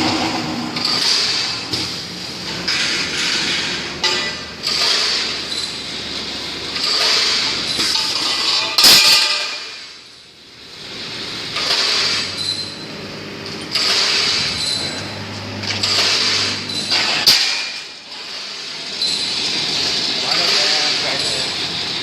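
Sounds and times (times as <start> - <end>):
sharp metal clank: 8.5 - 9.8, 15.6 - 18.1.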